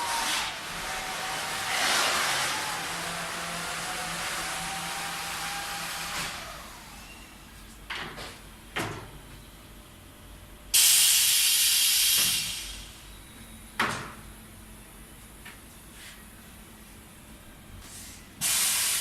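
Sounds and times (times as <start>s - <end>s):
compressed air blast hissing: 10.8s - 12.8s, 18.4s - 19.0s.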